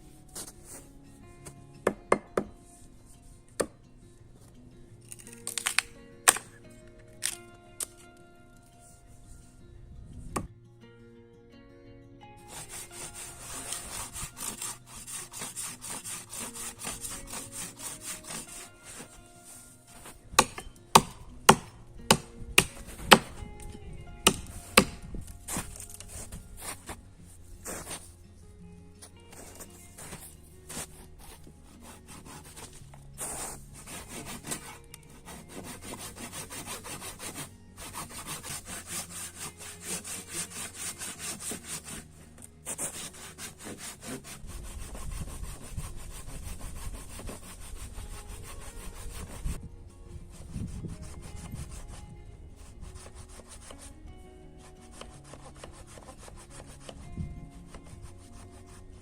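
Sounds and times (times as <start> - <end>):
soft background music: 0.0 - 59.0
hand saw cutting wood: 5.1 - 6.6, 12.4 - 23.5, 24.2 - 27.0, 27.6 - 28.0, 29.3 - 49.6, 50.3 - 53.9, 54.6 - 57.0, 57.7 - 59.0.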